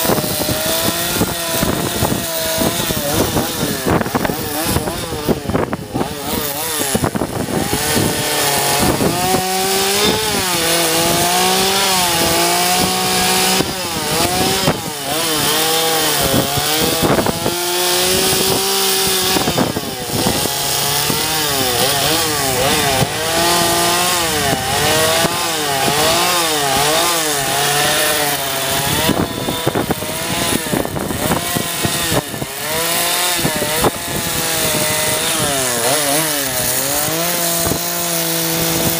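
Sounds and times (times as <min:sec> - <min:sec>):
chainsaw carving wood: 0:00.0 - 0:38.9.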